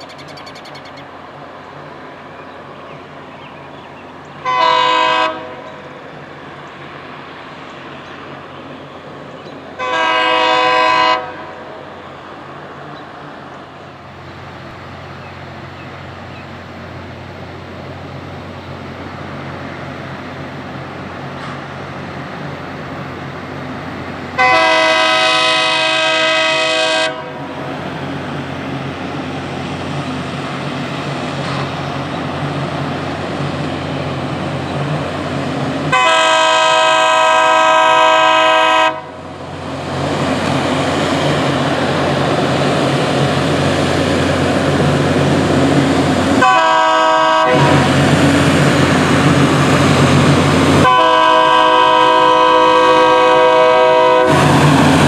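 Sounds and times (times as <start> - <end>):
approaching train rumble: 0.0 - 55.0
locomotive horn blasts: 4.4 - 5.7, 9.8 - 11.6, 24.4 - 27.4, 35.9 - 39.2, 46.4 - 47.9, 50.8 - 54.6.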